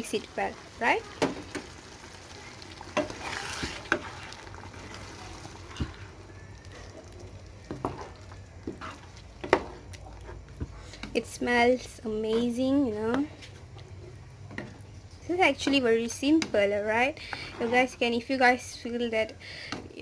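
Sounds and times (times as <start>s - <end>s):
low sizzle: 0.0s - 20.0s
utensil scraping and knocking pan: 3.0s - 5.0s, 7.7s - 11.2s, 15.5s - 18.1s.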